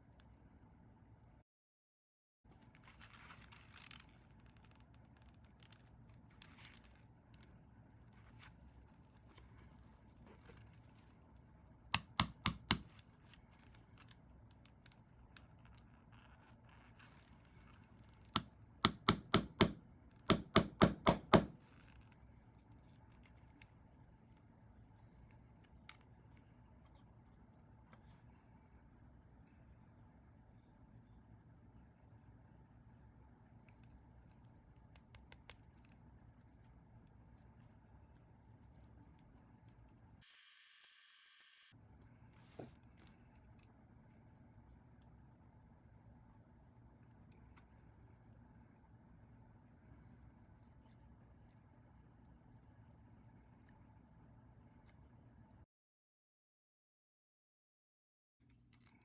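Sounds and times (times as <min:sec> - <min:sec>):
faint handling noises: 0:02.5 - 0:11.6, 0:12.8 - 0:18.4
sharp clicks on small parts: 0:12.0 - 0:13.1.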